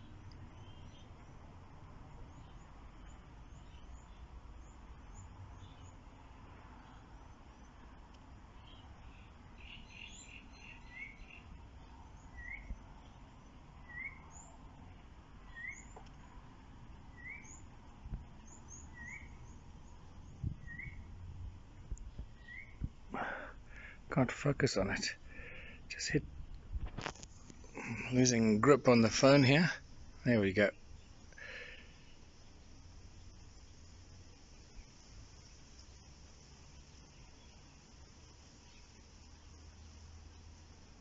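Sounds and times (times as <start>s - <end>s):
faint high bird chirps: 0.0s - 1.2s, 8.6s - 16.4s, 17.1s - 17.8s, 18.4s - 21.2s, 22.1s - 26.2s
bird short rising chirp: 20.4s - 21.1s.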